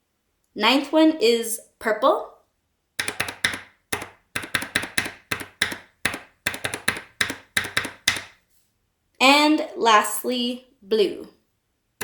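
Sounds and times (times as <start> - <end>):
keyboard switch clacking: 3.0 - 8.4.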